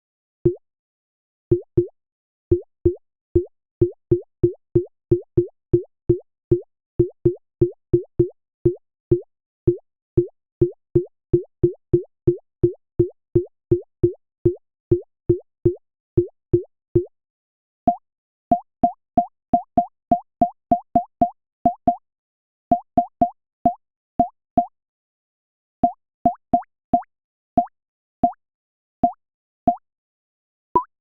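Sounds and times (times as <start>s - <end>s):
synthesized water-drop plops: 30.8s - 31.0s.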